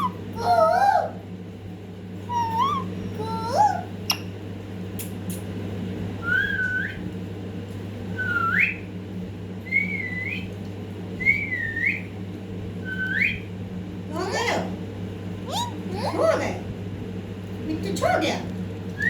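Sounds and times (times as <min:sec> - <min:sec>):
parrot whistling rising notes: 0:00.0 - 0:01.1, 0:02.3 - 0:03.9, 0:15.5 - 0:15.8
steady low hum: 0:00.0 - 0:19.0.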